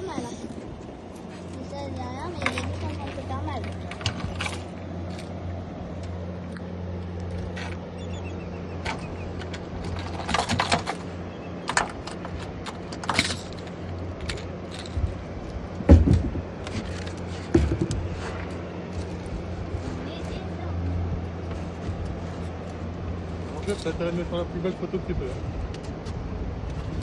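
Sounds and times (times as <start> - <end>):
clicks and rattles: 2.2 - 5.4, 8.8 - 15.2.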